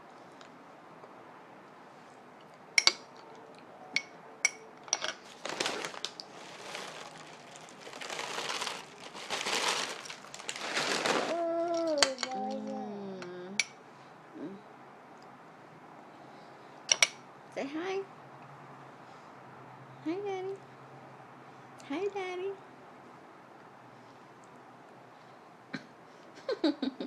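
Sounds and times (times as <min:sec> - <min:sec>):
rustling and crinkling: 0:05.0 - 0:12.4
toddler high-pitched vocalization: 0:11.3 - 0:13.6.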